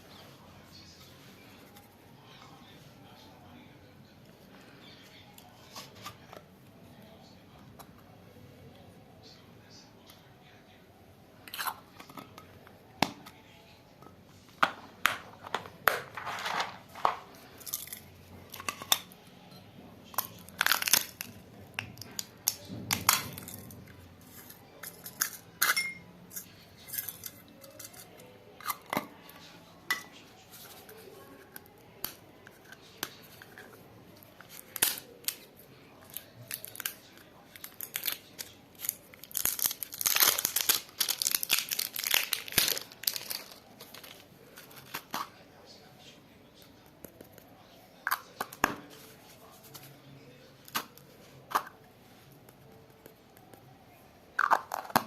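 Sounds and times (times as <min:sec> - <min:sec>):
plastic packaging crinkling: 0:36.1 - 0:45.1.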